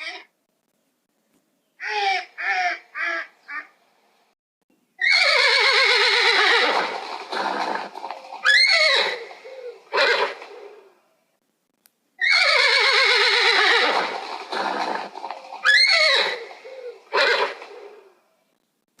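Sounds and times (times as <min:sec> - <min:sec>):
horse whinnying: 0:05.0 - 0:10.9, 0:12.2 - 0:18.1.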